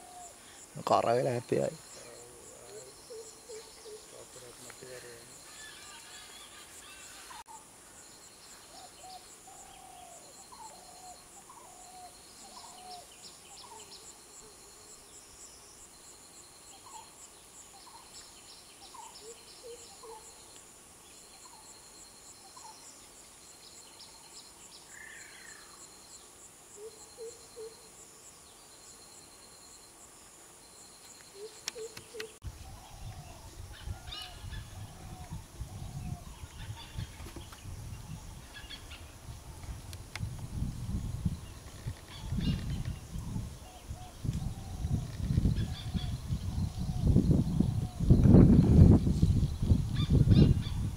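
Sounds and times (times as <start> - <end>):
wild birds calling: 0.0 - 14.6, 18.8 - 20.4, 31.2 - 39.6, 41.5 - 48.1, 50.0 - 50.9
insect chirring: 0.0 - 50.9.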